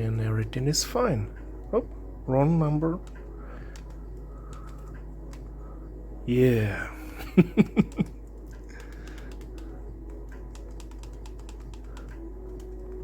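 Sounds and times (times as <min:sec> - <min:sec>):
man chuckling: 0:07.0 - 0:08.2
calculator keys clicking: 0:07.8 - 0:09.8, 0:10.4 - 0:13.0.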